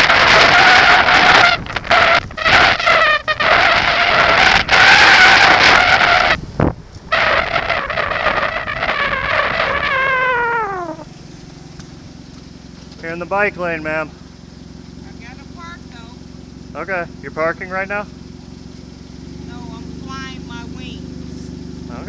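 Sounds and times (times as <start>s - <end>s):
air horn blast: 0.0s - 6.4s, 7.1s - 11.1s.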